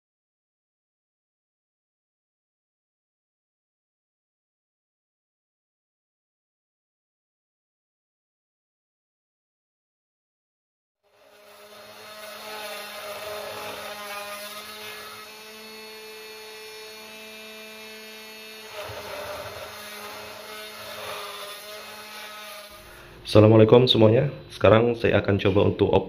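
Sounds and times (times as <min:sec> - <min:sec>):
end mill cutting aluminium: 0:11.1 - 0:22.8.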